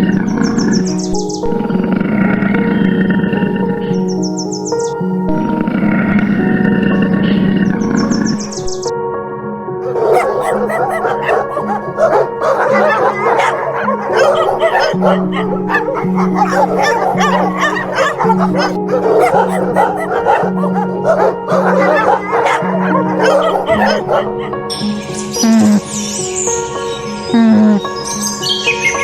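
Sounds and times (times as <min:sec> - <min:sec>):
dogs yipping and whimpering: 0:09.8 - 0:24.6.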